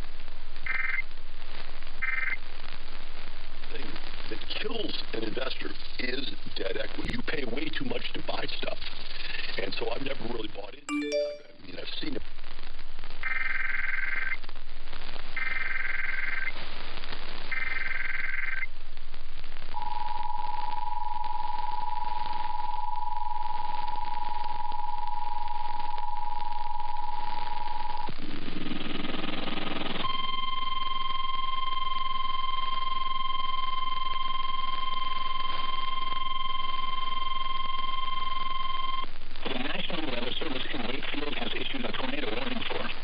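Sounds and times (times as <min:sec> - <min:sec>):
radio hiss: 0:03.6 - 0:10.9, 0:39.4 - 0:43.0
two-tone attention signal: 0:10.9 - 0:11.6.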